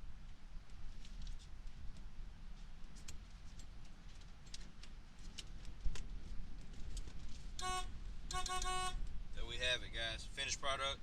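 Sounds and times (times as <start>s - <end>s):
car horn honking: 7.6s - 9.0s.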